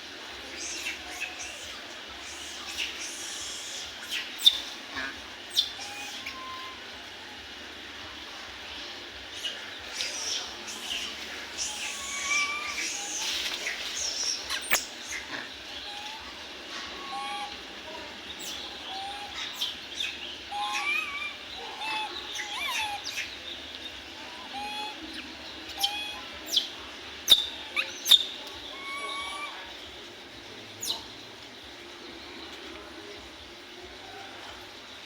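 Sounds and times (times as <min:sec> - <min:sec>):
baby monkey squeaky calls: 0:00.5 - 0:04.8, 0:05.5 - 0:06.8, 0:09.3 - 0:16.2, 0:16.9 - 0:17.6, 0:18.4 - 0:23.4, 0:24.3 - 0:29.7.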